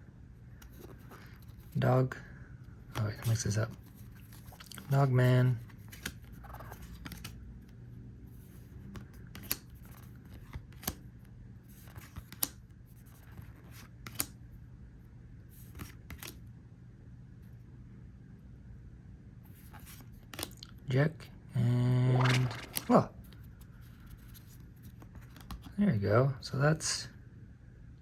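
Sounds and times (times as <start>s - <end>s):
faint steady hum: 0.0s - 28.0s
cards clicking and snapping: 5.8s - 7.4s, 8.9s - 11.0s, 11.8s - 12.6s, 13.3s - 14.4s, 15.7s - 16.4s, 19.8s - 20.7s, 22.2s - 23.0s, 25.0s - 25.7s.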